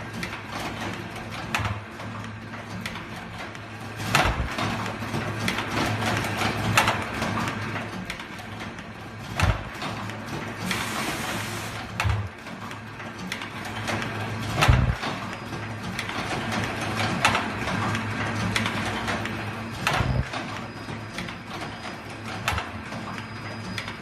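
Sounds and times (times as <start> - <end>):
fast mechanical clicking: 0.0 - 10.8, 11.8 - 24.0
machine humming: 4.0 - 4.8, 14.4 - 15.2, 19.7 - 20.5
heavy mechanical thumps: 4.1 - 4.8, 9.3 - 9.8, 12.0 - 12.4, 14.6 - 15.0, 19.8 - 20.3.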